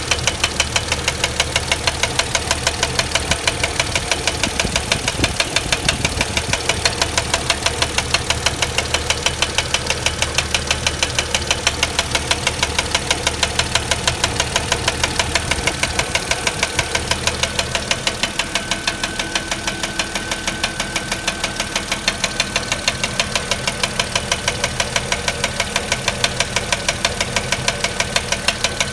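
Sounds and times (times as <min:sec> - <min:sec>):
engine running: 0:00.0 - 0:28.9
rapid regular engine knock: 0:00.0 - 0:28.9.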